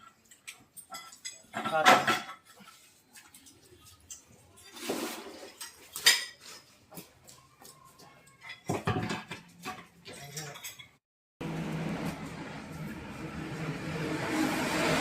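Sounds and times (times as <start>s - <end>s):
metal clinking on metal: 0.0s - 2.7s.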